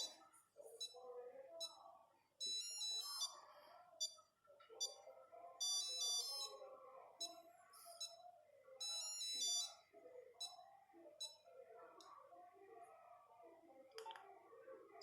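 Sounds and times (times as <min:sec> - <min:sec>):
monophonic phone ringtone beeps: 0:02.4 - 0:04.2, 0:05.6 - 0:06.6, 0:08.0 - 0:09.8.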